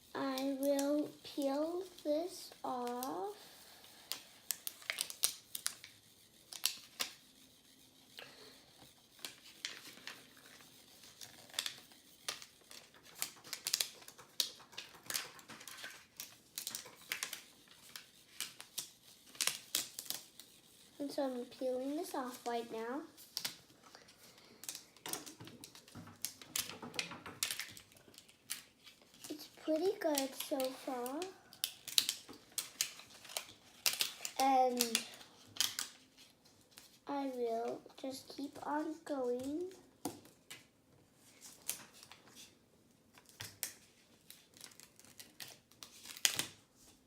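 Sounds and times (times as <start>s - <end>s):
plastic peeling off paper: 4.0s - 7.2s, 9.1s - 20.6s, 27.4s - 36.9s, 43.1s - 46.6s.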